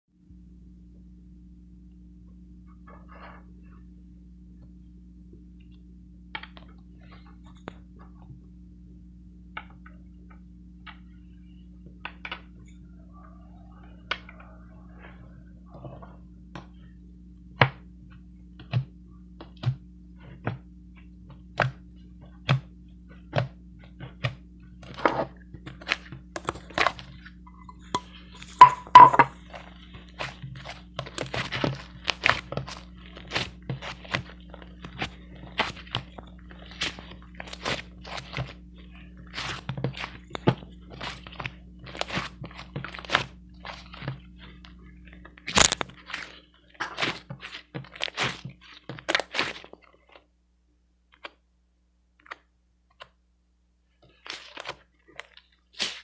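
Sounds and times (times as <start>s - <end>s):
steady low hum: 0.1s - 51.0s
sharp clicks and crunches: 27.8s - 38.6s, 39.3s - 50.2s, 54.1s - 56.0s.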